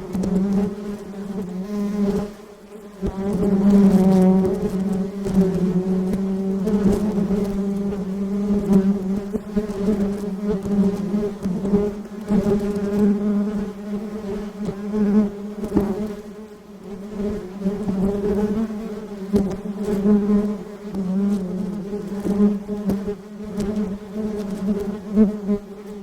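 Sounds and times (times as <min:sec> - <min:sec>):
bees buzzing: 0:00.0 - 0:26.0.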